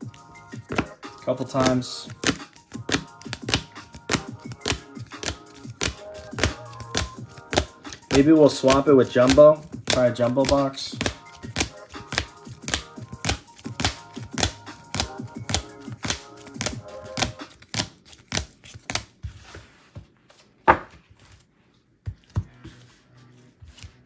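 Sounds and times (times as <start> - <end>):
soft background music: 0.0 - 19.0, 22.1 - 24.0
trading cards clicking on table: 0.0 - 19.1.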